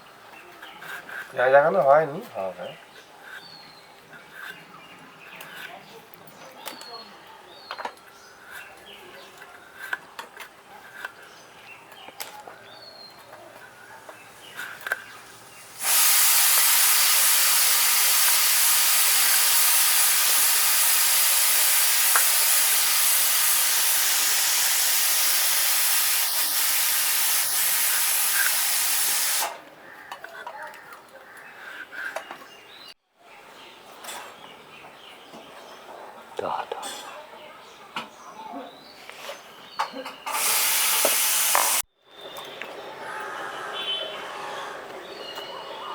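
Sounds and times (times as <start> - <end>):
loud steady hiss: 14.8 - 29.6, 40.2 - 41.8.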